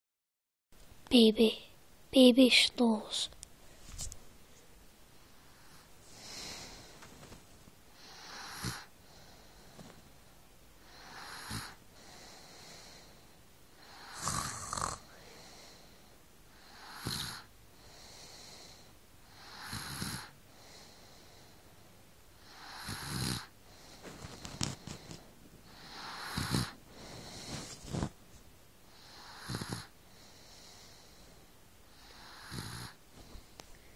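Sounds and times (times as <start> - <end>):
soft breaths: 2.8 - 33.9
baby snoring: 8.0 - 8.9, 10.8 - 13.1, 13.8 - 15.4, 16.6 - 18.7, 19.3 - 20.4, 22.4 - 25.1, 25.7 - 28.1, 28.9 - 31.0, 31.9 - 33.0.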